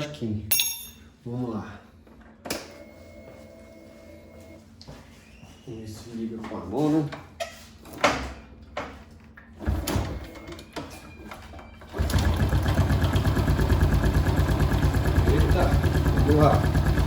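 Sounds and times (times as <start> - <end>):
small engine idling: 12.0 - 17.0.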